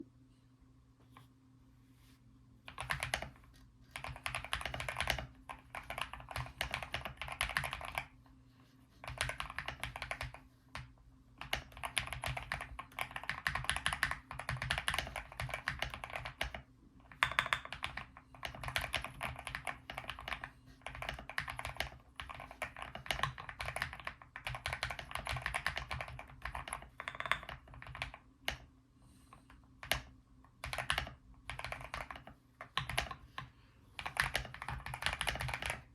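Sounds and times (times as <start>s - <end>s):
mechanical keyboard typing: 2.7s - 8.1s, 9.0s - 28.7s, 29.8s - 35.9s.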